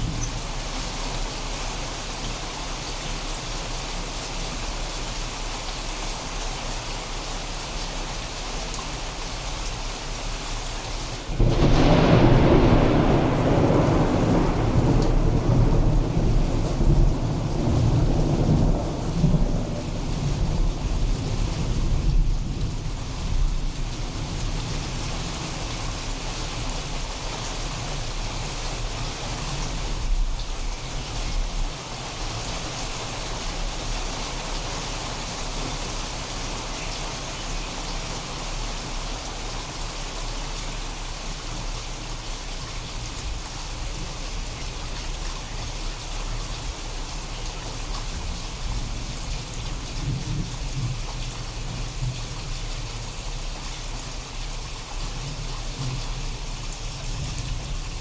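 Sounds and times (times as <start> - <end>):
steady rain falling: 0.0 - 58.0
low thunder rumble: 11.3 - 27.0, 48.0 - 53.2.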